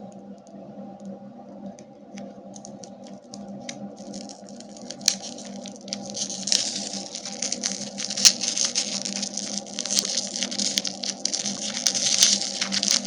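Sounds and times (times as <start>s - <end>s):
steady low hum: 0.0s - 13.0s
plastic wrapper crinkling: 2.6s - 13.0s.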